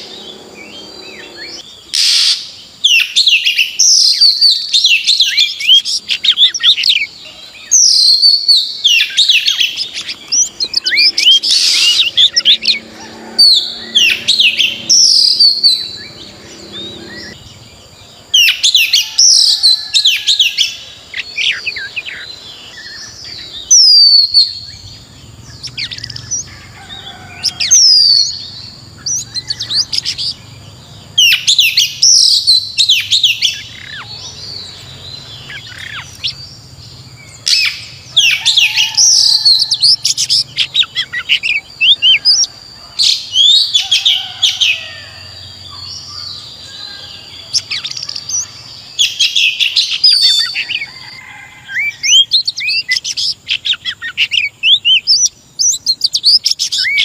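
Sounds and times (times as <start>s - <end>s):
bird chirping and whistling: 0.0s - 7.1s, 7.7s - 17.5s, 18.4s - 26.5s, 27.4s - 30.4s, 31.2s - 36.4s, 37.2s - 44.8s, 47.5s - 50.9s.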